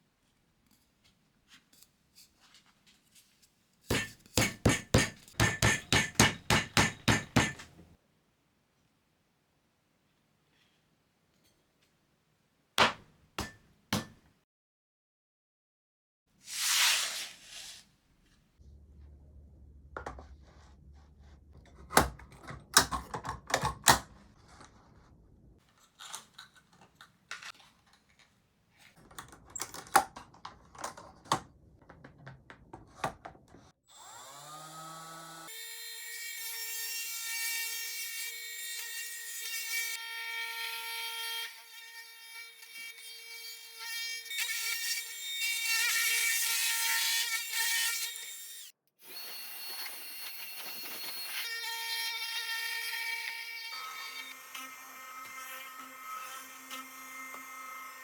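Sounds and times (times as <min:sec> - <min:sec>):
router motor whining: 0:49.0 - 0:58.0.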